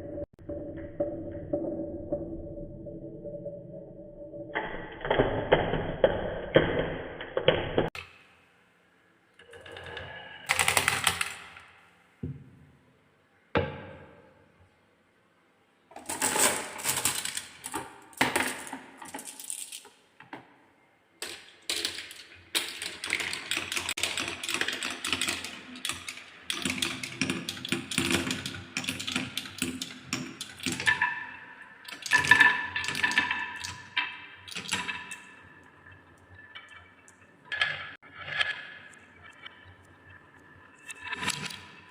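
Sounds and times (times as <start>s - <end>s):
marbles clattering down wooden run: 16.0s - 19.9s, 31.8s - 35.3s.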